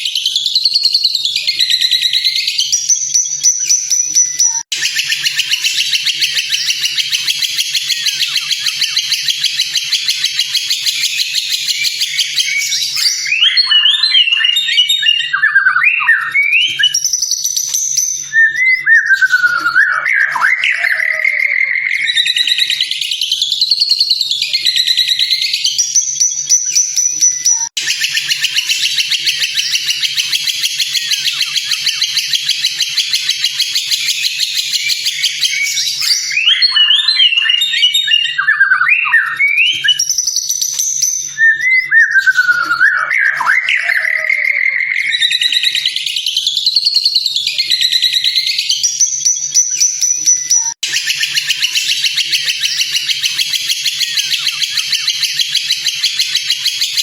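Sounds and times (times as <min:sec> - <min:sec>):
bird song with trills and whistles: 0:00.0 - 0:57.0.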